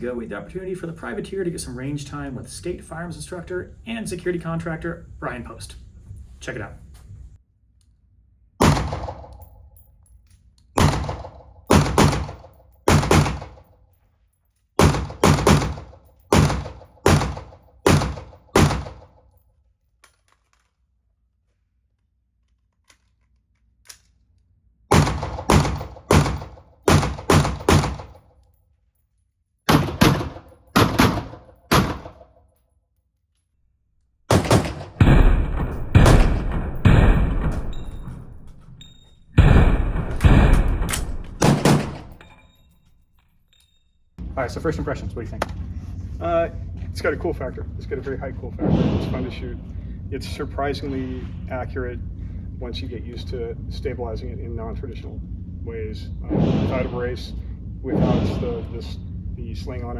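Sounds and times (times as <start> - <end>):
rifle gunshots: 8.6 - 9.3, 10.8 - 13.6, 14.8 - 19.1, 24.9 - 28.2, 29.7 - 32.2, 34.3 - 38.2, 39.4 - 42.2.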